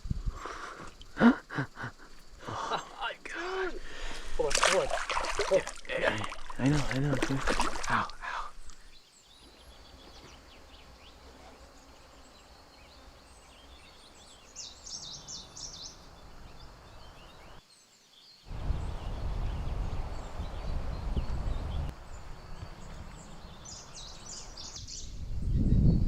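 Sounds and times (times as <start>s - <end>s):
wind buffeting microphone: 0.0s - 0.4s, 18.5s - 26.0s
bird chirping: 0.9s - 26.0s.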